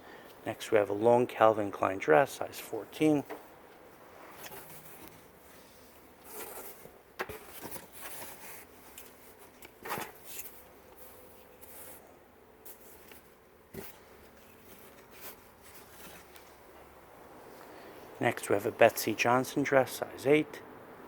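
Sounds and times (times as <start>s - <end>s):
dress fabric rustling: 3.8s - 16.9s.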